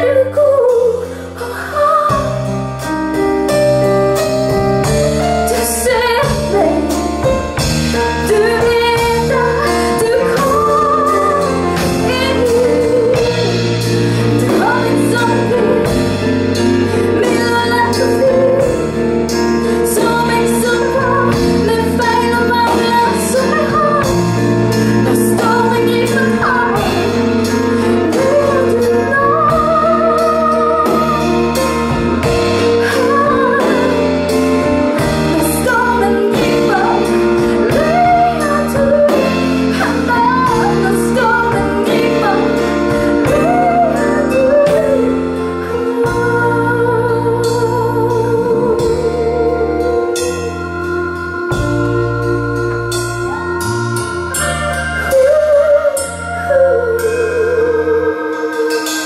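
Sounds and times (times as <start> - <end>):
woman singing with vibrato: 0.0 - 2.8, 4.8 - 59.0
bass guitar: 0.0 - 59.0
guitar: 0.0 - 59.0
drum kit steady beat: 2.0 - 56.4.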